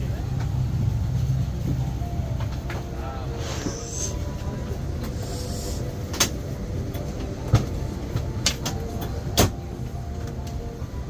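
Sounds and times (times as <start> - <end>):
vehicle rumble from inside: 0.0 - 11.0.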